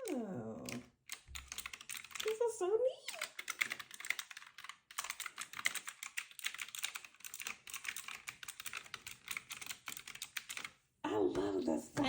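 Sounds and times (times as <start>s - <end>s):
keyboard keys clacking: 0.7s - 2.3s.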